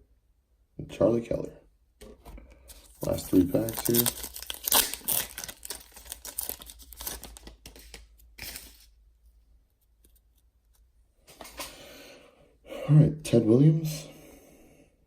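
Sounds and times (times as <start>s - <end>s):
card pack wrapper tearing and crinkling: 2.7s - 8.9s.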